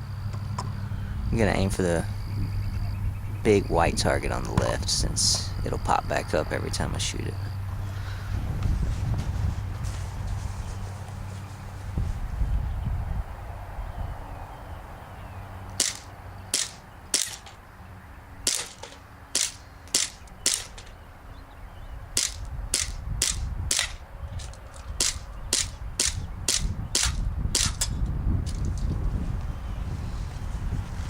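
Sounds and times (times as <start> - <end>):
wind rumble on microphone: 0.0 - 31.0
airsoft pistol shots: 15.8 - 17.6, 18.4 - 20.9, 22.2 - 24.0, 25.0 - 27.9.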